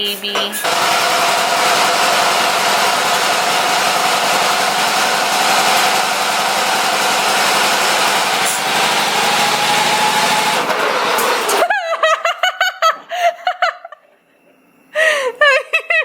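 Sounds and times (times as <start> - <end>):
riding lawn mower engine: 0.6 - 11.8.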